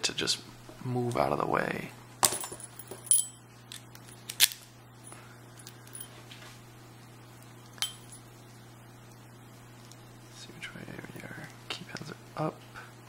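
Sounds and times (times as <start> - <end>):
bright metallic ring: 2.4 - 3.5, 7.8 - 8.3.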